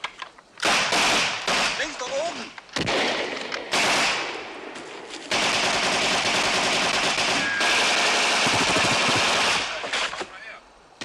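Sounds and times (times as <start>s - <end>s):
rapid automatic gunfire: 0.6s - 1.9s, 2.9s - 4.3s, 5.3s - 10.1s.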